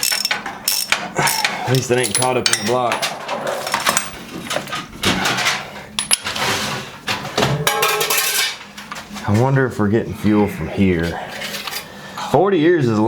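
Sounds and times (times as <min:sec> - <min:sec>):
steel hand tools clinking: 0:00.0 - 0:03.1.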